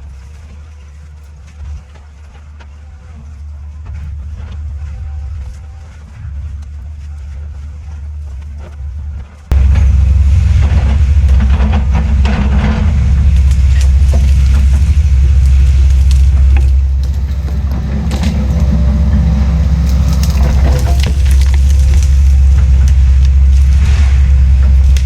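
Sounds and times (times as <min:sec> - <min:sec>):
diesel engine rumble: 0:00.0 - 0:25.0
cracking and grinding: 0:09.2 - 0:25.0
machinery clanks and ticks: 0:09.5 - 0:25.0.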